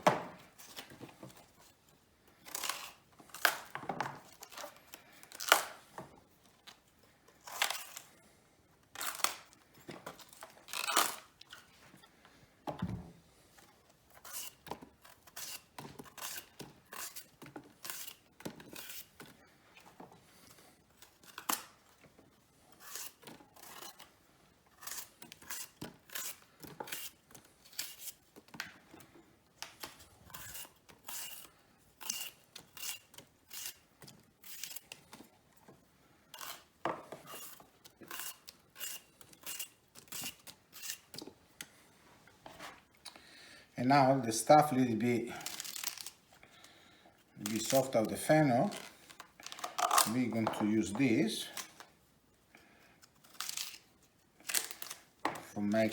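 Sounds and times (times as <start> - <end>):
fennel layers tearing and snapping: 4.4 - 5.8, 9.0 - 9.6, 10.2 - 11.7, 45.4 - 46.2, 48.6 - 50.2, 53.0 - 55.1.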